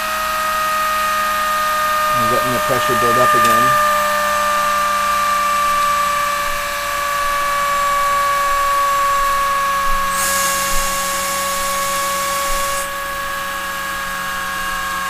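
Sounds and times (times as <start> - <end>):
turbine whine: 0.0 - 14.9
high steam hiss: 10.1 - 12.9.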